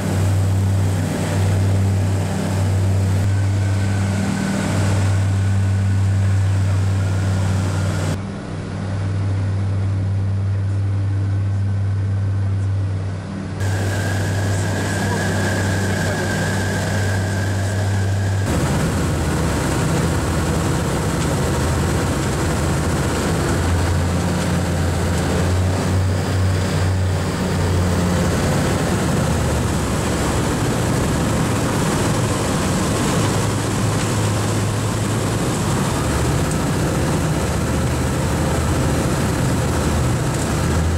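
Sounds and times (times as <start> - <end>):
aircraft engines droning: 0.0 - 40.9.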